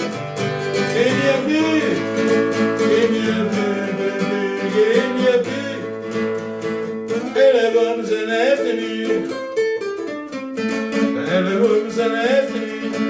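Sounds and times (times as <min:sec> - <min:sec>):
strummed acoustic guitar: 0:00.0 - 0:13.0
person singing: 0:00.7 - 0:06.4, 0:07.1 - 0:09.6, 0:10.9 - 0:13.0.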